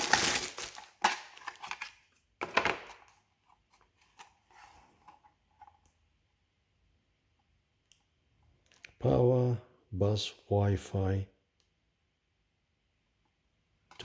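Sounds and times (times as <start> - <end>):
plastic packaging crinkling: 0.0 - 2.0.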